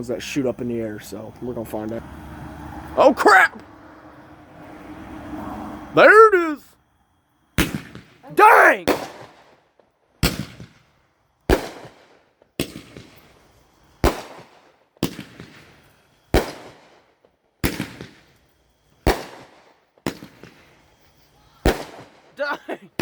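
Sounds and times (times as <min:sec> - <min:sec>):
firework bangs with echo: 0:07.6 - 0:08.2, 0:08.8 - 0:09.6, 0:10.2 - 0:10.9, 0:11.5 - 0:13.2, 0:14.0 - 0:18.3, 0:19.0 - 0:20.7, 0:21.6 - 0:22.4.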